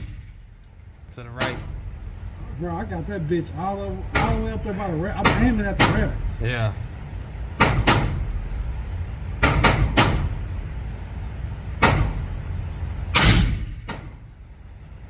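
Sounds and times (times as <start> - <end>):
gunshots indoors: 13.2 - 14.1.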